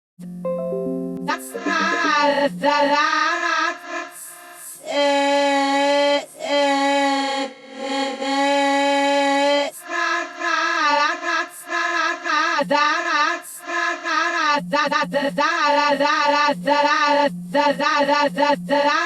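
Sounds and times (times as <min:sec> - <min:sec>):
time-stretched warbling voice: 0:01.3 - 0:02.5.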